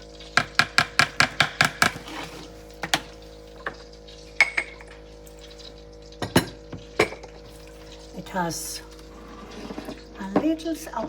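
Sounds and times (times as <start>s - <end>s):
spoon clinking against bowl: 4.4s - 4.9s.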